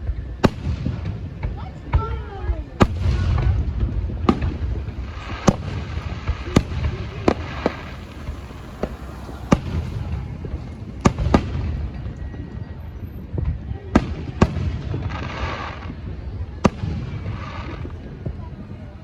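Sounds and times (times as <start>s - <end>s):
fireworks bangs: 0.0s - 18.9s
low rumble: 2.6s - 12.8s.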